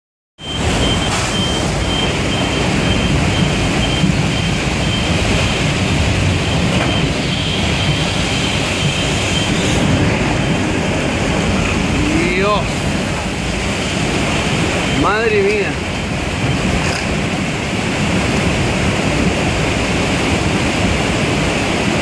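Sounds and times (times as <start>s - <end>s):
floodwater rushing: 0.4s - 22.0s.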